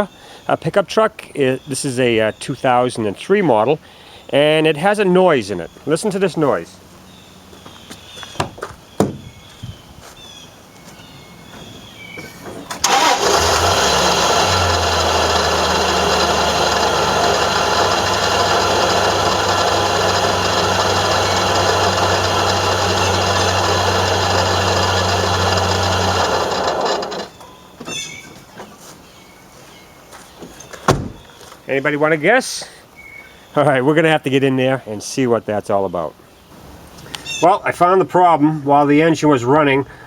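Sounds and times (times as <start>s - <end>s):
loud noise from compressor: 12.8s - 27.4s
pickup engine running: 12.8s - 27.4s.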